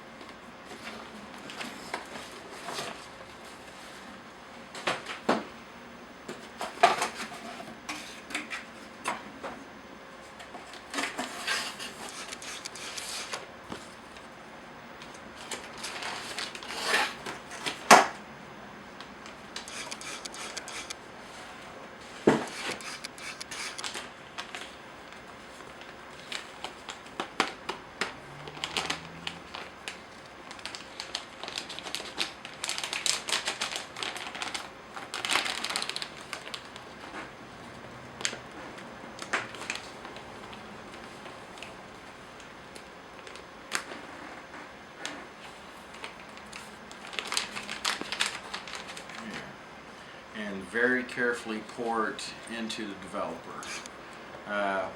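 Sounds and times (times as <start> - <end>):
clicks taps and rustles: 10.4 - 14.3, 19.2 - 21.0, 22.2 - 29.7.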